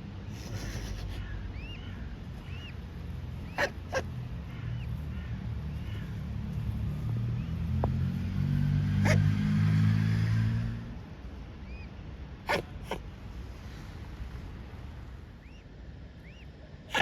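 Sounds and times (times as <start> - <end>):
cygnets peeping: 0.3 - 8.0
passing vehicle hum: 1.1 - 16.4
swan calling: 3.4 - 6.2, 12.5 - 13.0, 16.2 - 17.0.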